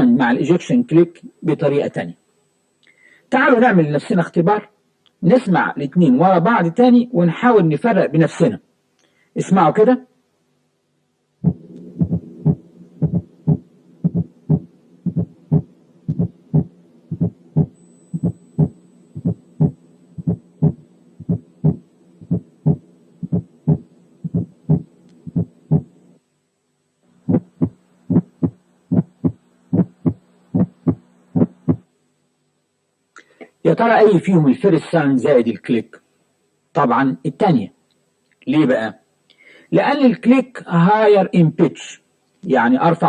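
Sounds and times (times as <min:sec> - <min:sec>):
faint steady hum: 0:00.0 - 0:43.0
heart ejection click: 0:11.4 - 0:25.9, 0:27.3 - 0:31.8
heartbeat: 0:11.4 - 0:25.9, 0:27.2 - 0:31.9.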